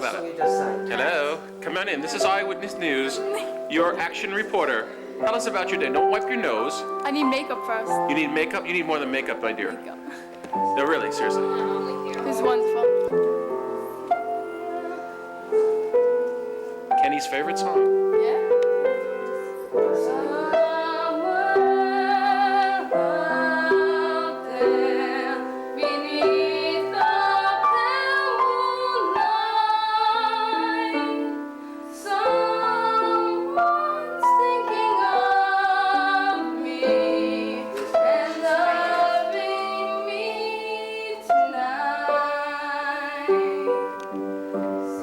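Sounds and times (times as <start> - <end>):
piano chords: 0.0 - 45.0
woman singing: 11.4 - 12.9, 19.9 - 44.0.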